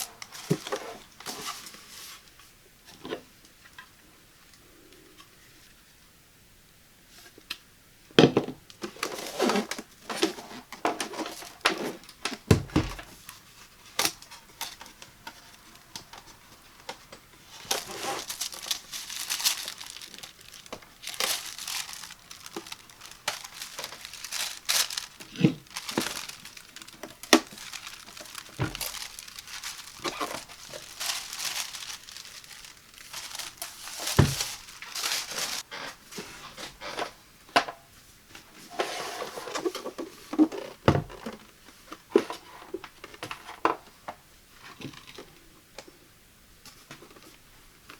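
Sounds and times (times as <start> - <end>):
packaging crinkling and rustling: 0.0 - 2.3, 8.7 - 35.7.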